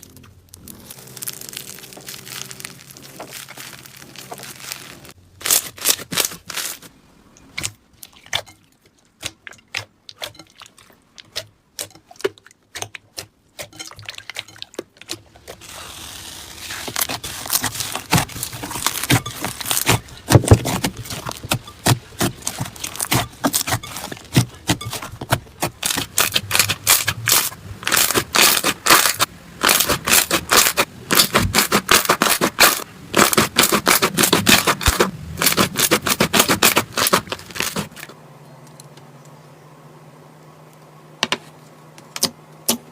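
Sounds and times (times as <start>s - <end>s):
slime crackling and popping: 0.0s - 6.9s, 15.6s - 38.0s.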